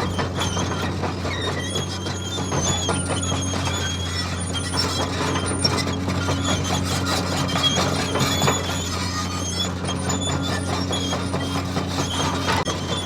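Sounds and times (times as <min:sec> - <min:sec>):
high-pitched squeaks and squeals: 0:00.0 - 0:13.0
toy bulldozer motor hum: 0:00.0 - 0:13.0.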